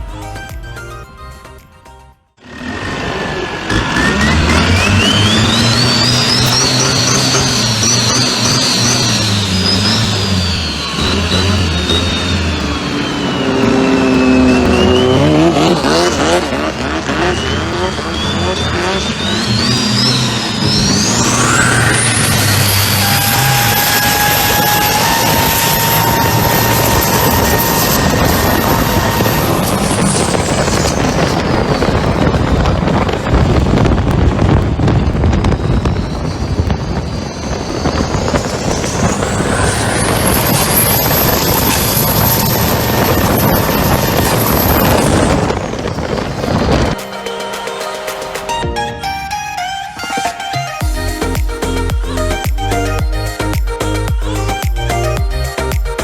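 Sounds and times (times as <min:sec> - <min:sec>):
high engine whine: 0:02.3 - 0:56.0
boat diesel engine running hard: 0:02.4 - 0:47.0.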